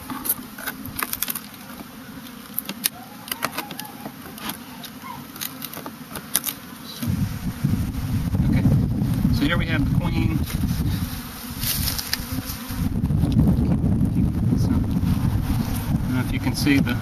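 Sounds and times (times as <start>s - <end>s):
honeybees buzzing: 0.0s - 17.0s
wind rumble on microphone: 7.0s - 17.0s.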